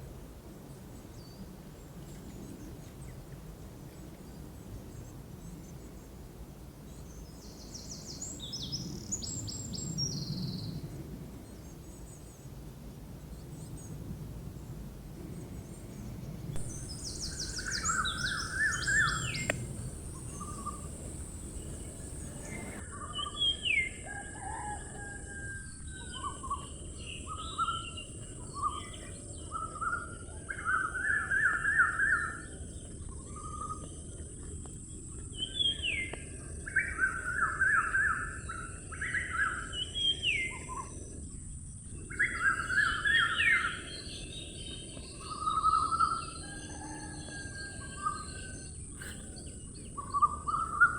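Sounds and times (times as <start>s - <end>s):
steady high hiss: 11.4s - 22.8s
birds chirping and warbling: 13.4s - 24.6s, 25.7s - 50.9s.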